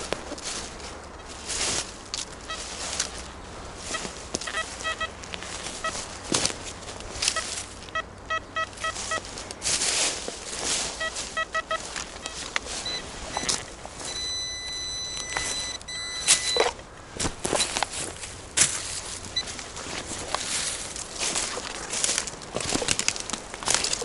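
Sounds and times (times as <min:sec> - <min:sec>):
rustling and crunching: 0:00.0 - 0:24.0
wind gusting through trees: 0:00.0 - 0:24.0
short high beeps: 0:02.5 - 0:02.7, 0:03.9 - 0:05.2, 0:07.3 - 0:09.2, 0:11.0 - 0:16.7.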